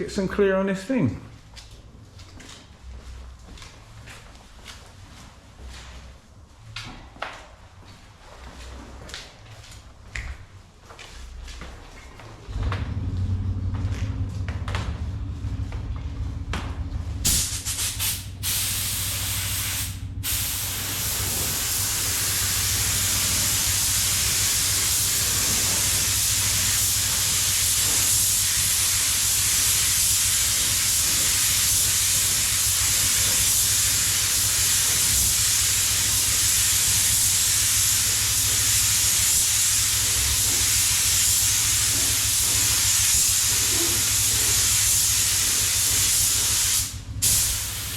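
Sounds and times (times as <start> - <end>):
steady low hum: 11.4 - 47.9
paint spray gun hissing: 17.3 - 47.9.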